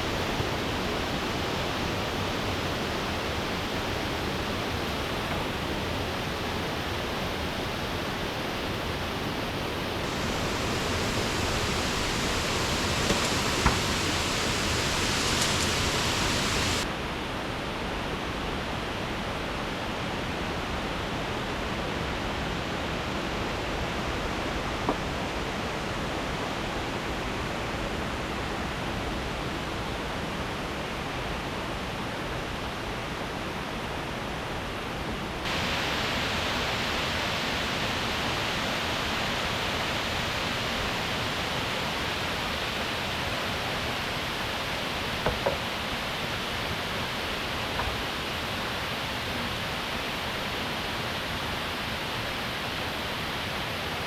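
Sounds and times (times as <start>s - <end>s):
waterfall rushing: 10.0s - 16.9s, 35.5s - 41.3s
faint tap: 10.2s - 16.8s.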